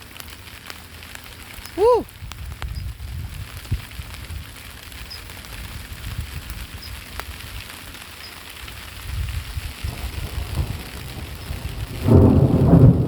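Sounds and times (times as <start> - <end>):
rain falling: 0.0 - 13.0
raindrop ticks: 0.0 - 13.0
low thunder rumbling: 9.2 - 13.0.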